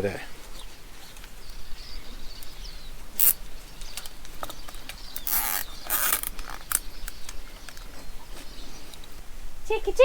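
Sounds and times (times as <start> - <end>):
cable tie ratcheting zips: 3.2 - 7.9.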